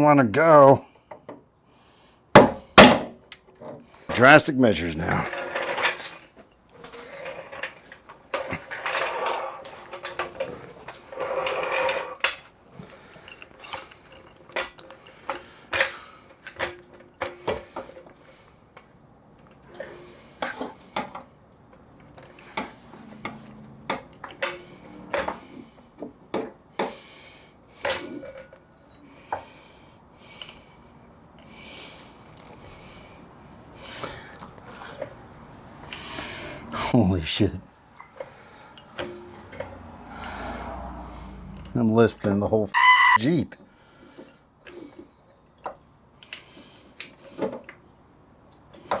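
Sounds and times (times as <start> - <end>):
metal clanks and knocks: 2.4 - 3.2.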